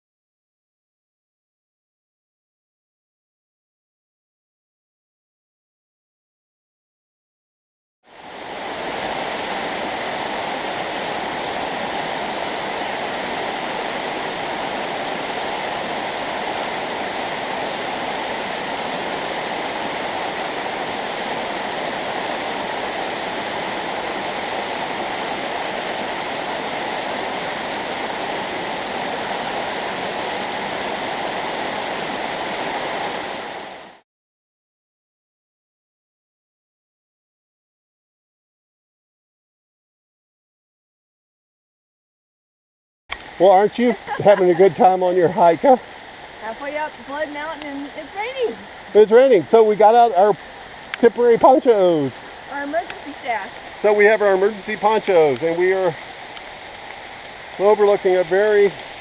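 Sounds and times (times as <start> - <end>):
waterfall rushing: 8.1 - 34.0, 43.1 - 59.0.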